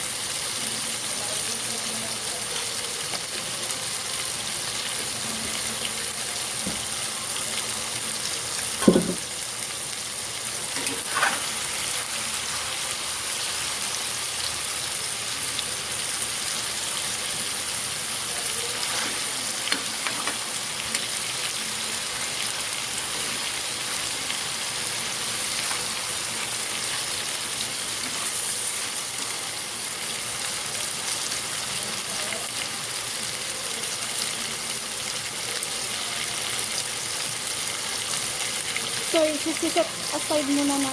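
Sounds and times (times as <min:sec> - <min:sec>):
chicken sizzling in hot oil: 0:00.0 - 0:40.9
sharp knock: 0:08.8 - 0:09.2.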